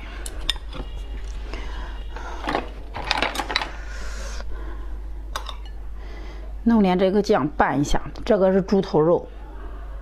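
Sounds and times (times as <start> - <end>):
tableware clinking: 5.4 - 5.8.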